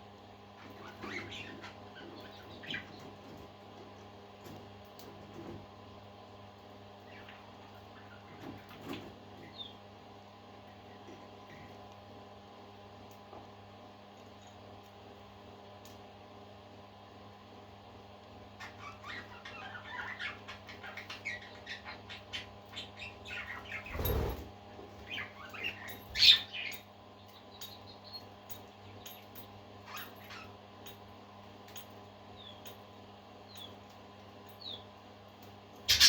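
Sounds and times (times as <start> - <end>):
electrical hum: 0.0 - 36.0
parakeets chirping: 0.7 - 3.1, 7.1 - 8.7, 18.6 - 24.4, 25.0 - 26.8, 29.9 - 30.5.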